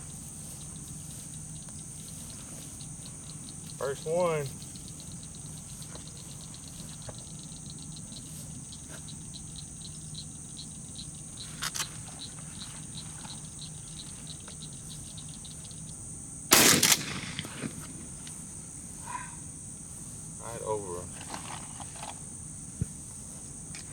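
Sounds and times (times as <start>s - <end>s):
insects chirping and buzzing: 0.0s - 23.9s
shotgun shot with echo: 16.5s - 18.4s.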